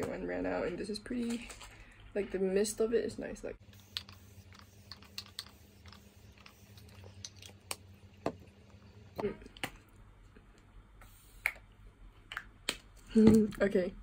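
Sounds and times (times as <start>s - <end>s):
low room hum: 0.0s - 14.0s
small objects clicking and tapping: 3.9s - 8.4s.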